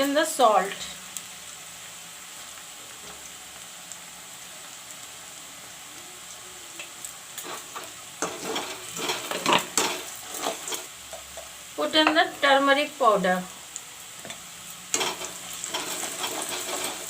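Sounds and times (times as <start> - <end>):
onions sizzling in oil: 0.0 - 17.0
spatula scraping in pan: 7.4 - 11.3, 14.3 - 17.0.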